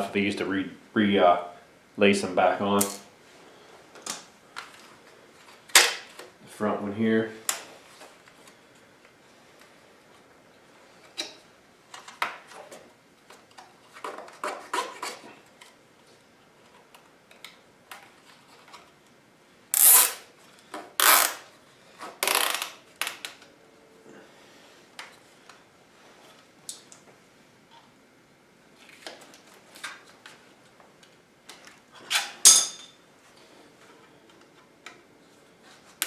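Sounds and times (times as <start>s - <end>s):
zip ties ratcheting tight: 19.8s - 20.2s, 21.0s - 21.4s, 22.2s - 23.3s.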